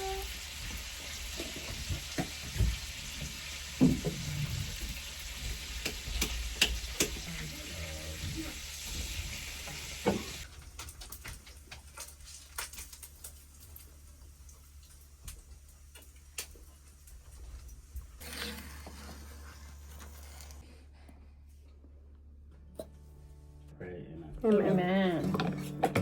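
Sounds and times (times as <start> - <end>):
food sizzling in a frying pan: 0.0 - 10.5.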